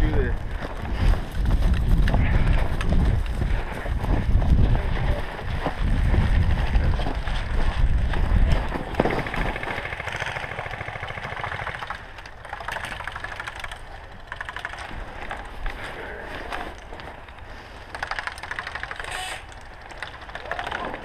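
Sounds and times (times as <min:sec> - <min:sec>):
wind rumble on microphone: 0:00.0 - 0:09.7.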